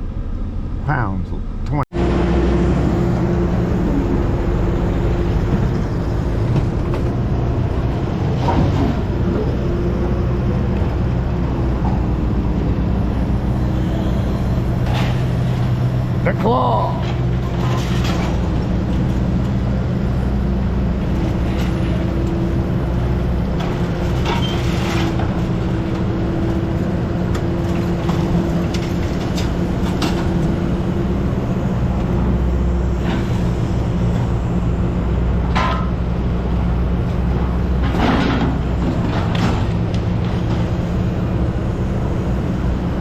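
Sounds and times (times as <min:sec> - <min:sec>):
diesel engine running: 0:00.0 - 0:43.0
metal clanks and knocks: 0:35.5 - 0:36.0.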